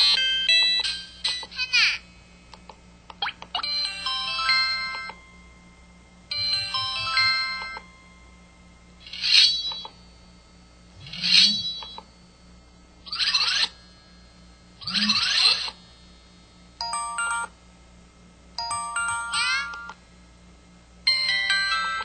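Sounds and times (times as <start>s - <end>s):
bright phone chimes: 6.3s - 8.6s, 16.8s - 17.6s, 18.6s - 20.0s.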